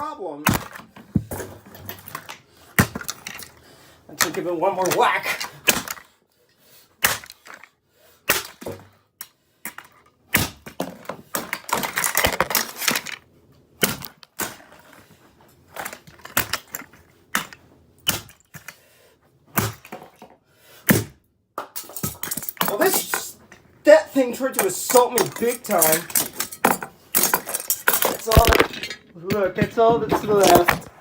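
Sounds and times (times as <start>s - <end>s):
sharp whacks on plastic: 0.4s - 1.4s, 10.3s - 10.8s, 13.8s - 14.6s, 18.1s - 18.4s, 19.6s - 20.0s
cracking plastic clatter: 0.5s - 3.6s, 9.7s - 13.2s, 13.8s - 18.8s, 21.6s - 31.0s.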